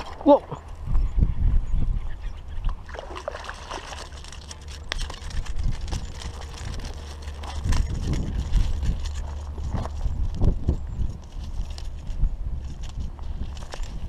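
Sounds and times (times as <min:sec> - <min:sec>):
low rumble: 0:00.0 - 0:14.0
water splashing and trickling: 0:02.7 - 0:06.8.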